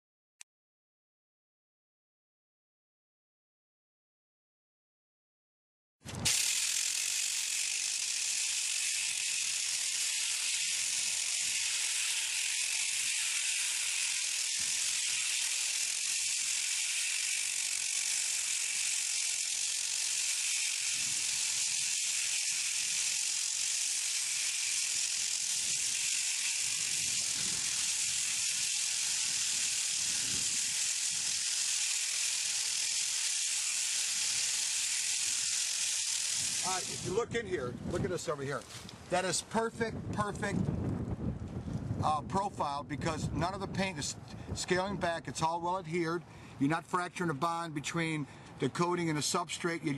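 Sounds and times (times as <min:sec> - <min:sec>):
abrasive tool grinding paint: 0:06.1 - 0:37.3.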